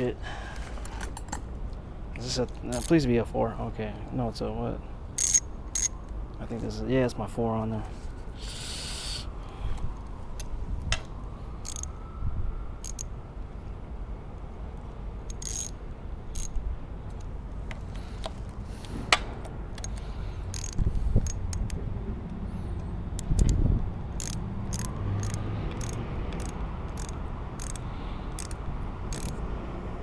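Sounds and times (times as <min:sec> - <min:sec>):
hand ratchet clicking: 0:05.2 - 0:06.0, 0:11.6 - 0:11.9, 0:12.8 - 0:13.0, 0:15.3 - 0:16.6, 0:19.8 - 0:21.8, 0:23.2 - 0:29.4.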